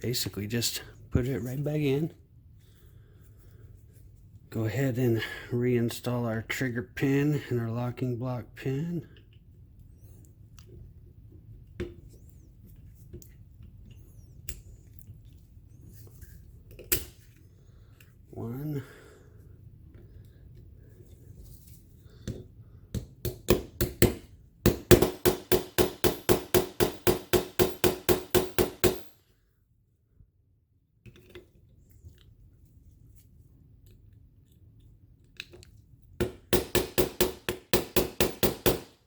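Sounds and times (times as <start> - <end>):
small hammer tapping pins: 22.3 - 29.1, 36.2 - 38.9.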